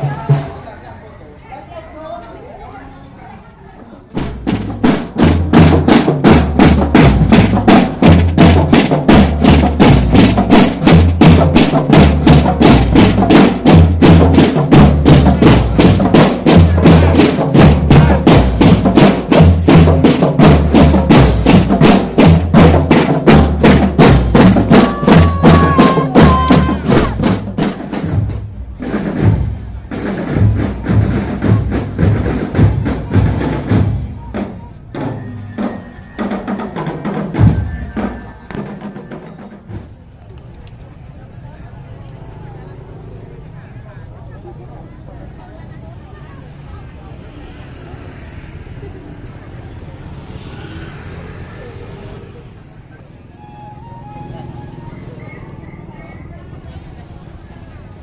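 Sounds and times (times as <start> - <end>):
bass drum beats: 4.2 - 34.5
snare drum strokes: 4.2 - 40.0.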